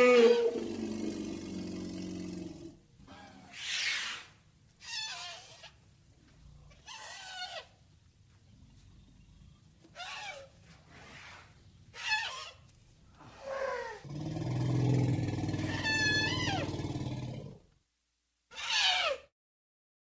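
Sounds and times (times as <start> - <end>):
elephant roars and growls: 0.0 - 4.1, 13.2 - 17.6.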